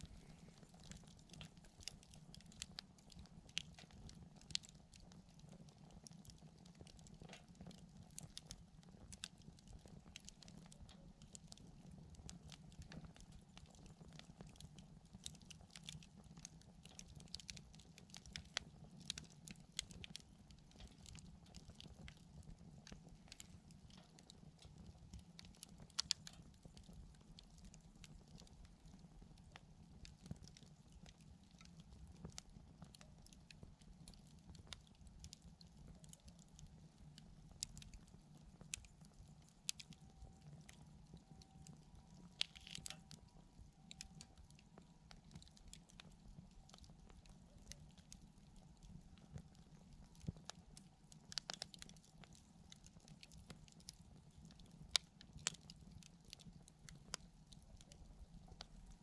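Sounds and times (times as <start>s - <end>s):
low steady hum: 0.0s - 6.0s, 18.0s - 51.2s
campfire crackling: 0.0s - 59.0s.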